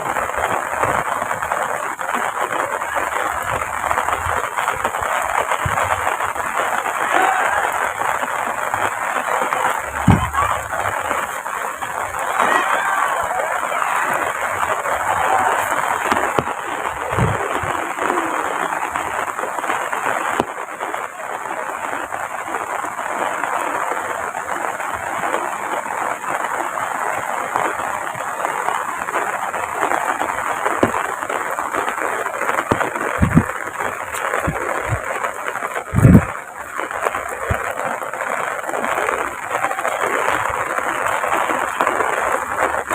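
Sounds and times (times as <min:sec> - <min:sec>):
heavy rain falling: 0:00.0 - 0:42.9
low thumps: 0:09.9 - 0:10.9, 0:16.1 - 0:17.7, 0:32.7 - 0:33.6, 0:35.9 - 0:36.3.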